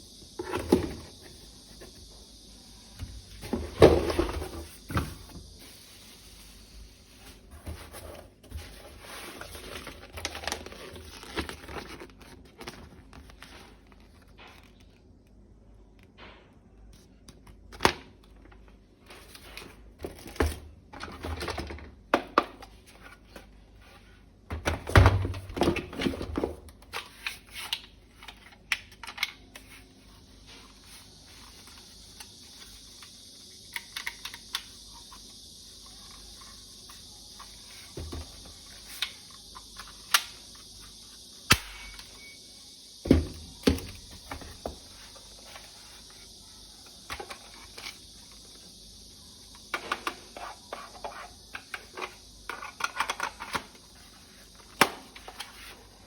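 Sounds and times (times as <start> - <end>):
steady high hiss: 0.0 - 12.0, 29.4 - 56.0.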